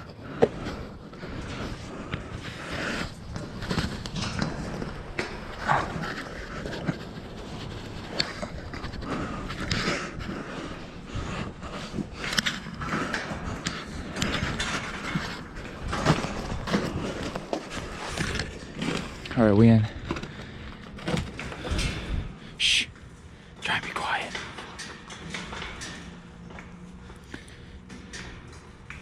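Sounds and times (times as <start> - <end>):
heavy breathing: 5.8 - 15.4.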